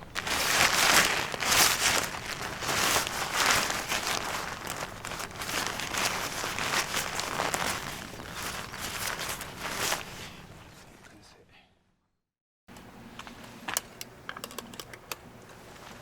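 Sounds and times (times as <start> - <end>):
crinkly rustling and crunching: 0.0 - 11.2.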